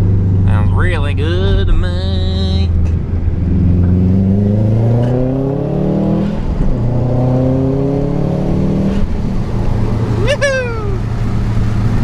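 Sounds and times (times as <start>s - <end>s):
car engine accelerating hard: 2.6s - 12.0s.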